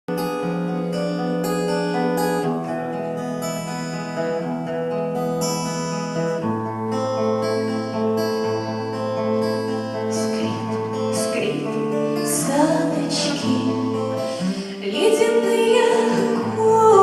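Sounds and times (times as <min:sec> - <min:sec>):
instrumental held chords: 0:00.1 - 0:17.0.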